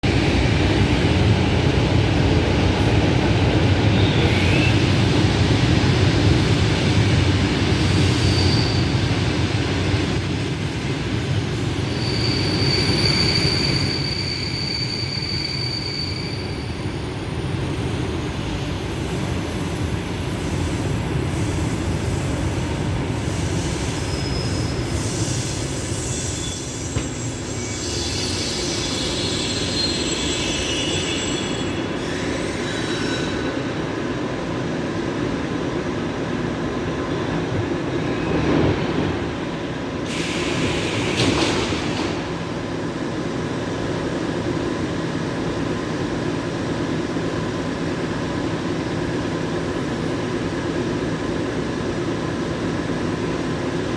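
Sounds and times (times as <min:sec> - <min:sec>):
train wheels rumbling: 0:00.0 - 0:53.9
high-pitched running gear squeals: 0:07.2 - 0:33.7.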